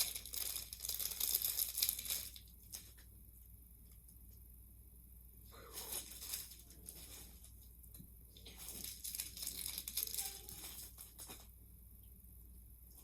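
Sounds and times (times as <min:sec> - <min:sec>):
plastic packaging crinkling: 0:00.0 - 0:03.0, 0:05.7 - 0:07.7, 0:08.4 - 0:11.5.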